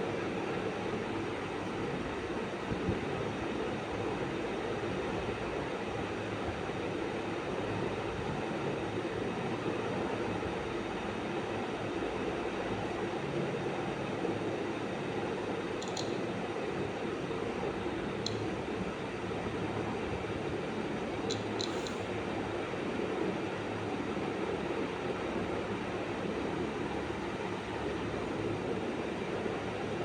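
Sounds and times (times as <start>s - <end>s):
high click: 15.8s - 16.2s, 21.3s - 22.0s.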